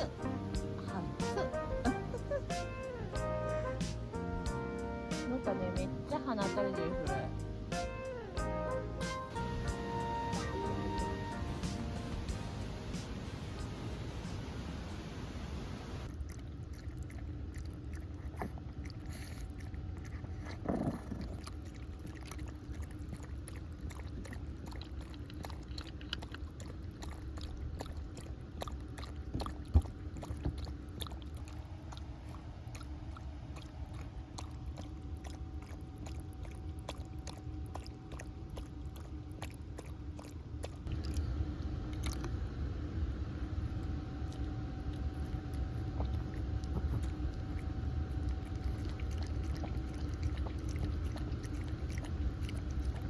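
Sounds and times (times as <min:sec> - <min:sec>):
low steady rumble: 0:00.0 - 0:53.0
dog chewing and crunching: 0:16.0 - 0:42.4, 0:43.6 - 0:53.0.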